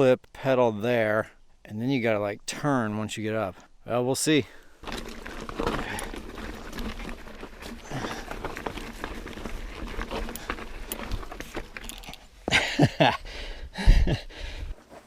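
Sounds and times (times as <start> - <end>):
rider breathing heavily: 4.4 - 15.0
bike clicking and knocking on rocks: 4.6 - 12.3.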